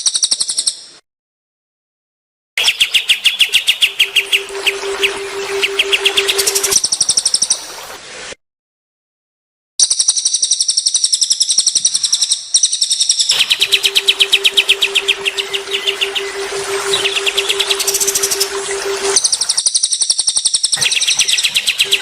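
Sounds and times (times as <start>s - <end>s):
songbirds chirping and trilling: 2.6s - 6.8s, 13.3s - 19.6s
steady low hum: 4.0s - 6.8s, 13.4s - 19.5s.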